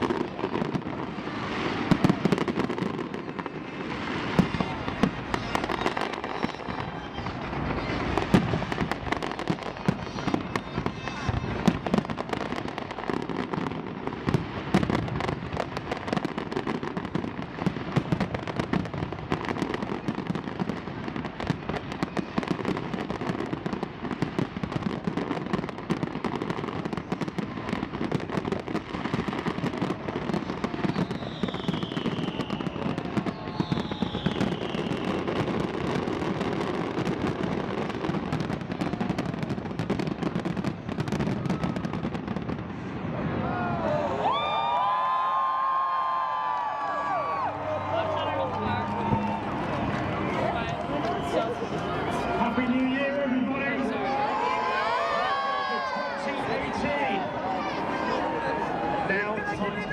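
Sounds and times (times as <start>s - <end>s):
fireworks crackling and banging: 0.0s - 59.9s
falling firework whistles: 29.0s - 37.4s, 40.4s - 43.6s.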